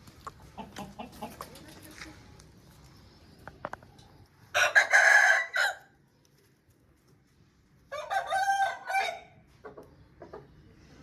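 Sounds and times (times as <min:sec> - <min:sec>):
rooster crowing: 0:04.6 - 0:05.9, 0:07.9 - 0:09.3.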